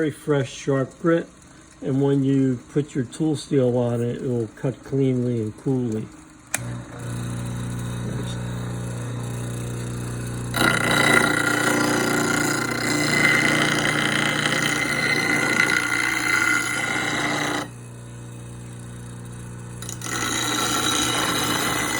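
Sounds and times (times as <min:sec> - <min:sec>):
bench grinder motor humming: 0:05.2 - 0:21.9
tool grinding on wheel: 0:06.6 - 0:17.8, 0:19.2 - 0:21.9.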